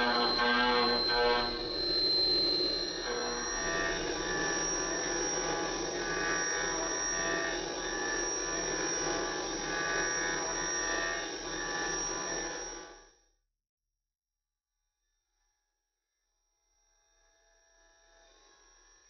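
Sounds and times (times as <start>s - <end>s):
milling machine whining: 0.0s - 12.5s.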